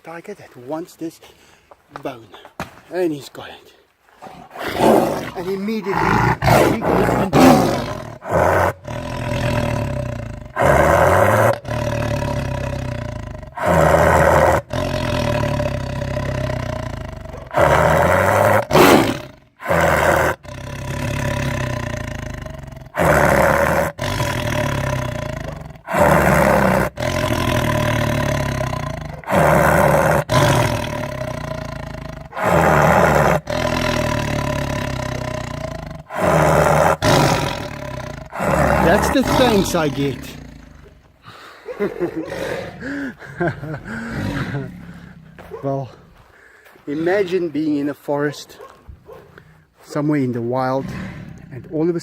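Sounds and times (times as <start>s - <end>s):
tiger roaring and snarling: 4.2s - 41.1s, 41.9s - 46.1s, 50.6s - 52.0s.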